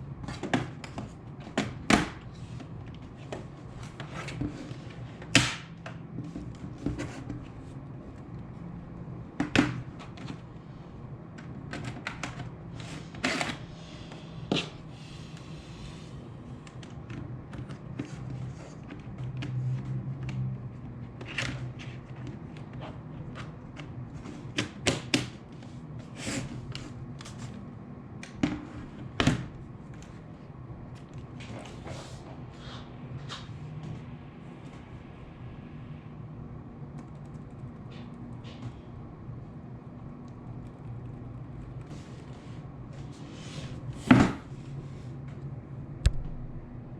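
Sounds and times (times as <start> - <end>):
steady low hum: 25.4 - 46.9.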